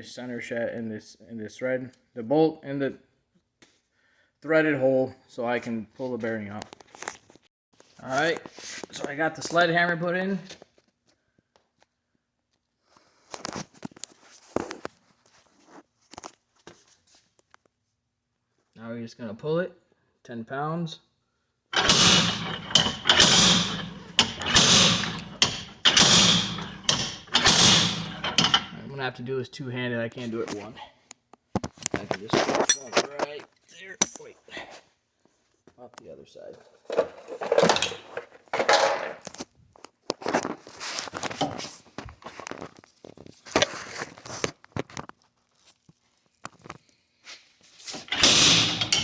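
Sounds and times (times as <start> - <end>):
slide hammer metallic clanks: 21.8 - 29.0, 48.0 - 49.0.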